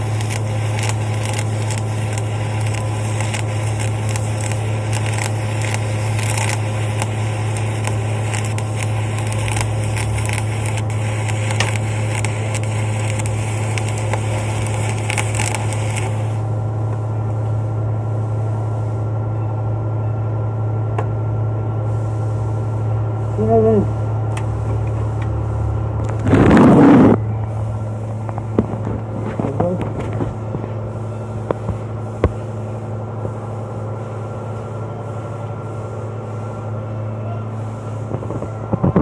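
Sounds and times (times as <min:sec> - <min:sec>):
welding arc crackling: 0:00.0 - 0:16.6, 0:23.4 - 0:36.8
welding machine hum: 0:00.0 - 0:19.8, 0:20.5 - 0:39.0.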